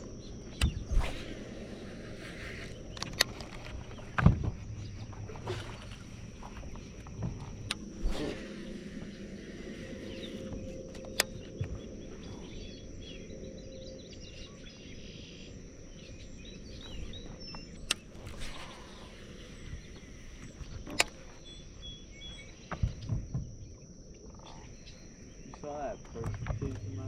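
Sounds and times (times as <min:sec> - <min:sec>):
high insect drone: 0:00.0 - 0:27.0
sharp clicks: 0:02.7 - 0:04.3, 0:17.8 - 0:18.5
bird chirps: 0:07.7 - 0:27.0.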